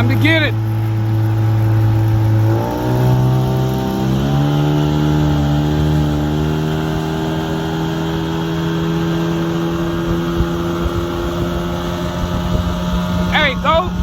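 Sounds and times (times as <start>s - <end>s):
outboard motor running: 0.0s - 14.0s.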